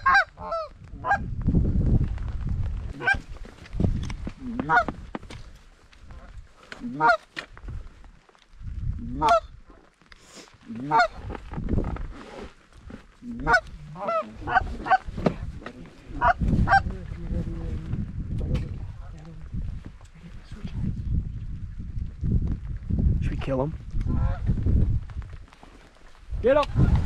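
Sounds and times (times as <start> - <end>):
goose honking and clucking: 0.0 - 1.2, 3.0 - 3.3, 4.4 - 4.9, 6.1 - 7.3, 9.1 - 9.5, 10.7 - 11.3, 13.2 - 15.0, 24.1 - 24.5
wind rumble on microphone: 0.0 - 9.9, 10.6 - 27.0.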